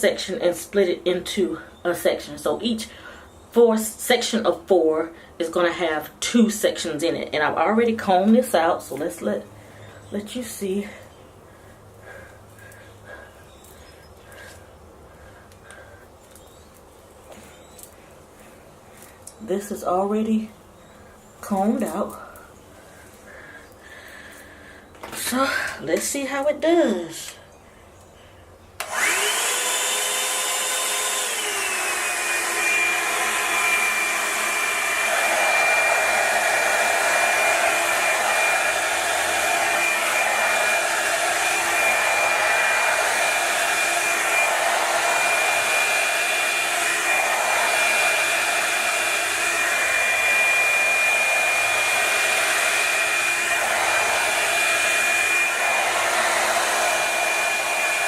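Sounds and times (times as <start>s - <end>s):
hair dryer brush motor whine: 28.8s - 58.0s.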